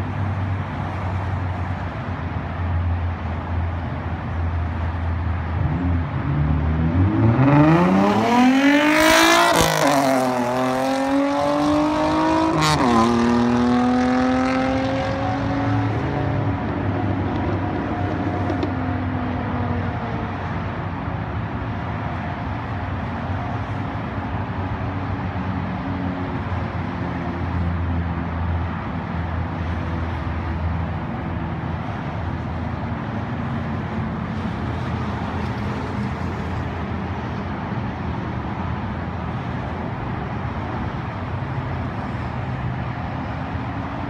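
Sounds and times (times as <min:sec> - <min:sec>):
car engine revving: 0:05.6 - 0:16.5.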